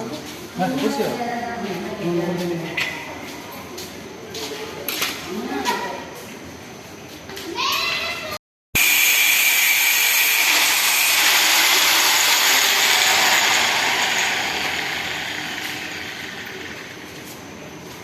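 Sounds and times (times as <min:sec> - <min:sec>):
angle grinder cutting steel: 0:08.8 - 0:17.2.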